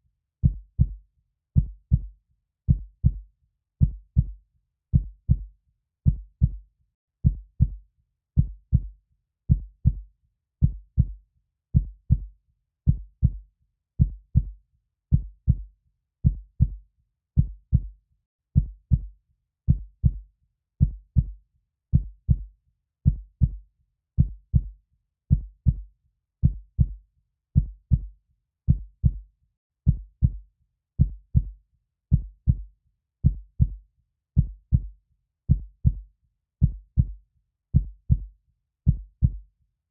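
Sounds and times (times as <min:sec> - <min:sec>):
heartbeat thumps: 0:00.4 - 0:01.0, 0:01.6 - 0:02.1, 0:02.7 - 0:03.2, 0:05.0 - 0:05.5, 0:06.1 - 0:06.6, 0:09.5 - 0:10.0, 0:10.6 - 0:11.2, 0:11.8 - 0:12.3, 0:12.9 - 0:13.4, 0:14.0 - 0:14.5, 0:15.1 - 0:15.6, 0:16.2 - 0:16.8, 0:17.4 - 0:17.9, 0:18.6 - 0:19.1, 0:19.7 - 0:20.2, 0:23.1 - 0:23.6, 0:24.2 - 0:24.7, 0:25.3 - 0:25.8, 0:26.4 - 0:27.0, 0:27.6 - 0:28.1, 0:28.7 - 0:29.2, 0:29.9 - 0:30.4, 0:31.0 - 0:33.8, 0:34.4 - 0:34.9, 0:35.5 - 0:36.0, 0:36.6 - 0:37.2, 0:37.8 - 0:38.3, 0:38.9 - 0:39.4.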